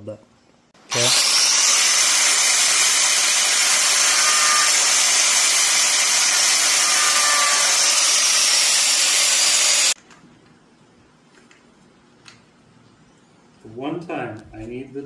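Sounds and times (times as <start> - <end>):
power grinder grinding steel: 0.9 - 10.0.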